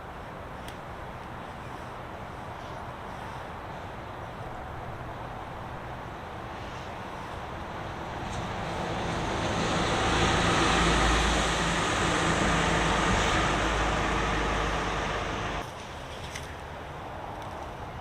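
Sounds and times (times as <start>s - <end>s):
motor vehicle passing by: 7.6s - 15.7s.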